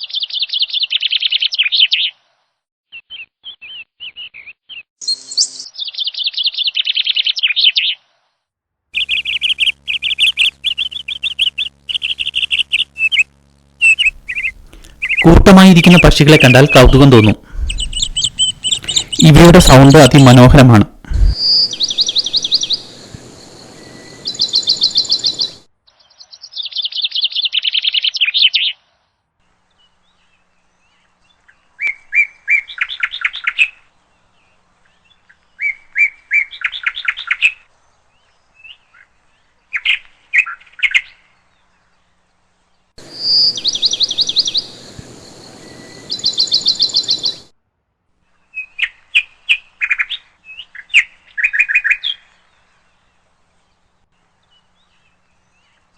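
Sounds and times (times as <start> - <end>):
sparrow trills and chips: 13.8 - 20.5, 21.1 - 28.8, 43.0 - 47.4.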